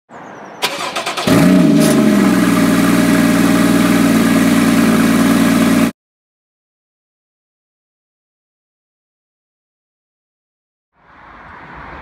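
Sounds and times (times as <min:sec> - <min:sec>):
car engine starting and idling: 0:00.6 - 0:05.9.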